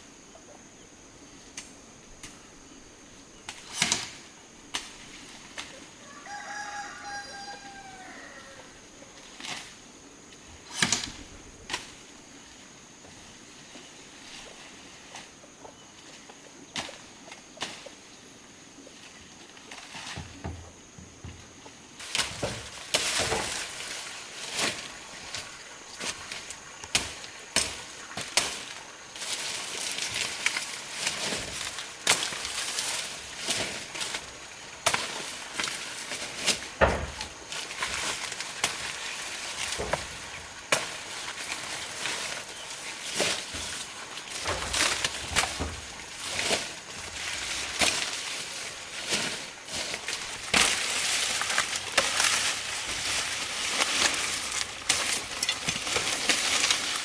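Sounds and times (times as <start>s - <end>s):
rustling and scraping: 19.0s - 57.0s.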